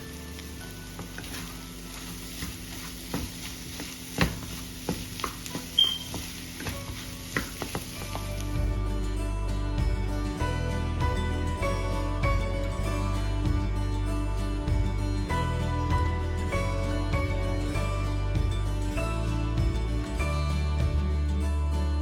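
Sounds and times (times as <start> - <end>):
background music: 0.0 - 3.7, 6.6 - 22.0
food sizzling in a frying pan: 0.0 - 8.6.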